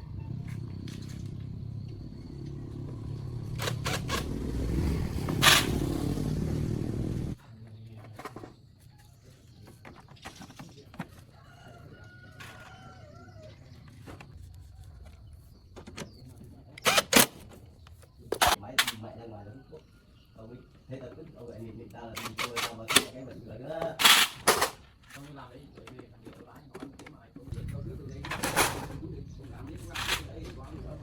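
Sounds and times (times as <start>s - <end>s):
motorcycle engine rumbling: 0.0s - 7.4s, 27.4s - 31.0s
rooster crowing: 11.2s - 13.8s.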